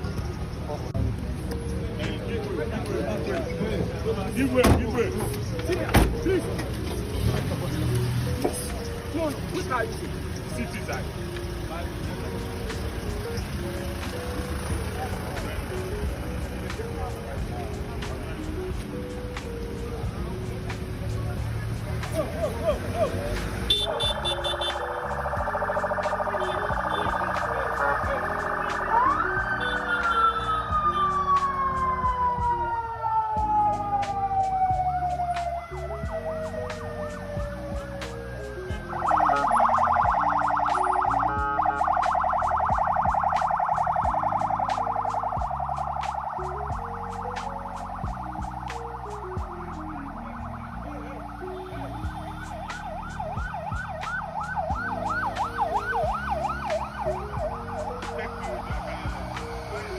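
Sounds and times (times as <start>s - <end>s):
rapidly cycling siren: 23.7s - 59.9s
police siren falling tone: 23.8s - 59.9s.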